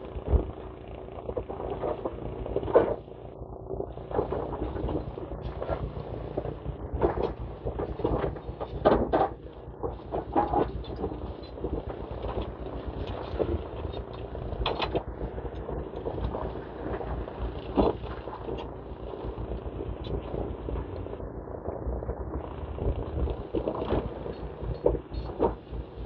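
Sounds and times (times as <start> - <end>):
excavator diesel engines running: 0.0 - 26.0
machines crunching concrete: 4.0 - 21.1, 22.4 - 26.0.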